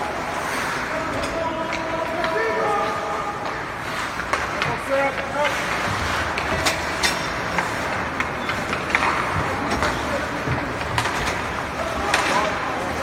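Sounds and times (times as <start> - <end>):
arena din and voices: 0.0 - 13.0
hockey sticks and puck clacking: 0.0 - 13.0.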